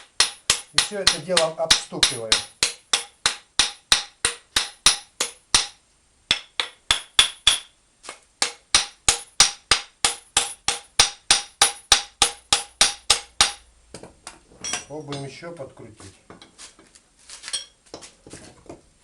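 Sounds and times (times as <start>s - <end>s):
hammer striking metal: 0.0s - 7.7s, 8.4s - 13.7s.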